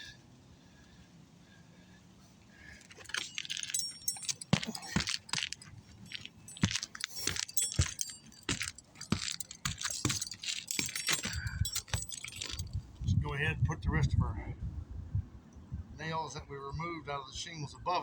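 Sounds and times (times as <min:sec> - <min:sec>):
roofing nails jingling: 0:02.6 - 0:12.9.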